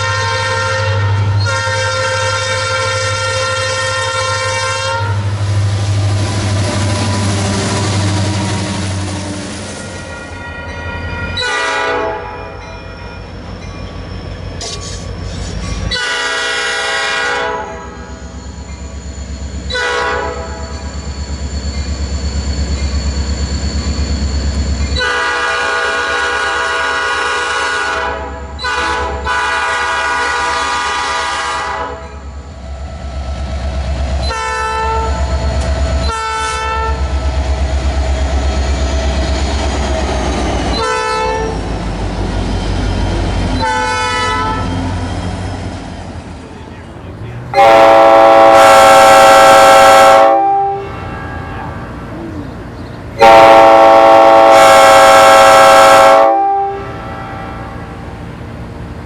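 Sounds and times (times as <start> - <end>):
train horn blasts: 0.0 - 13.3, 15.9 - 18.3, 19.7 - 20.9, 25.0 - 32.2, 34.2 - 35.4, 36.0 - 37.2, 40.7 - 41.6, 43.6 - 44.9, 47.5 - 58.6
passing train rumble: 0.0 - 59.0.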